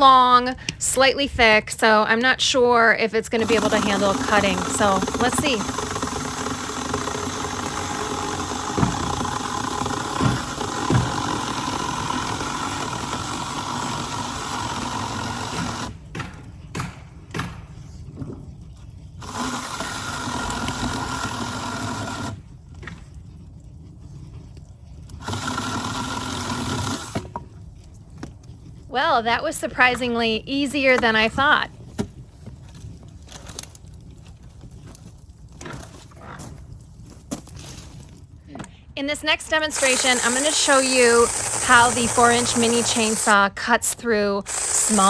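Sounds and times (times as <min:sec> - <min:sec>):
mini chainsaw cutting wood: 0:03.4 - 0:17.6, 0:19.2 - 0:22.4, 0:25.1 - 0:27.4, 0:39.3 - 0:45.0.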